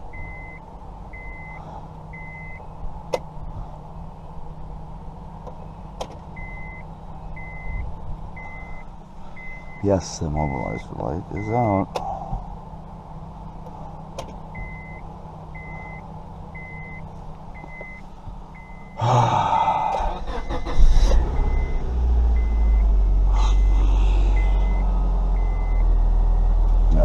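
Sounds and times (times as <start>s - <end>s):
car engine idling: 0.0s - 27.0s
warning chime beeping: 9.4s - 11.8s, 20.1s - 26.6s
engine starter cranking: 19.9s - 22.0s.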